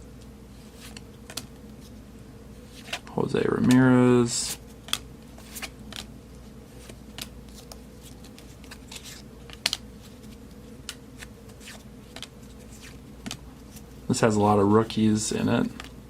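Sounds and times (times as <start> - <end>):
trading cards flipped by hand: 0.6 - 1.9, 2.6 - 3.8, 4.5 - 6.1, 6.7 - 13.9.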